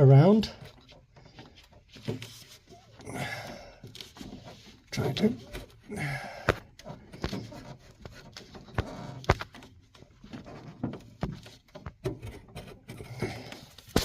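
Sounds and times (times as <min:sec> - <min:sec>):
handling rustle: 0:00.4 - 0:03.1
clicks and light knocks: 0:06.4 - 0:14.0.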